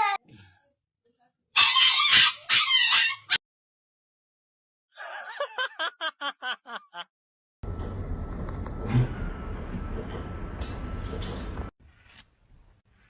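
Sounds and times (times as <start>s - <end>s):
shrill vocal sounds: 1.6s - 3.4s.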